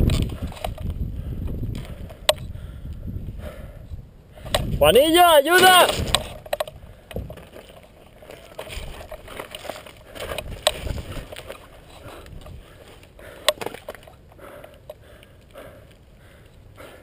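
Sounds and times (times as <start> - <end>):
rustling and scuffling: 5.5 - 14.8.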